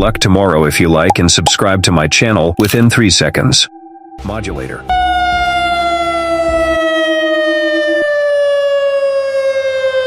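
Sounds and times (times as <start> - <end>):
electronic warning siren falling tone: 4.9 - 10.0.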